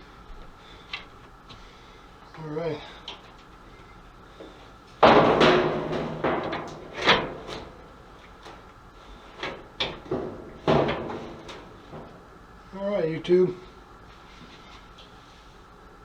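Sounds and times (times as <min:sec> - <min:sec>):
hard objects knocking and clattering: 0:04.4 - 0:12.5.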